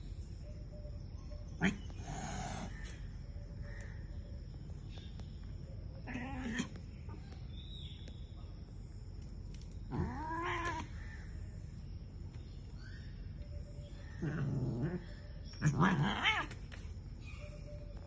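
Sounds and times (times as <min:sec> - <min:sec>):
cat meowing: 0:06.0 - 0:06.8, 0:09.9 - 0:10.9.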